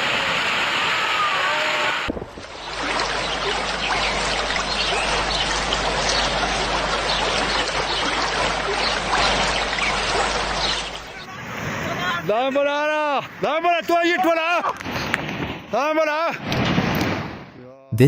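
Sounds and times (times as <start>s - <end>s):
rushing trickling noise: 2.0s - 12.4s.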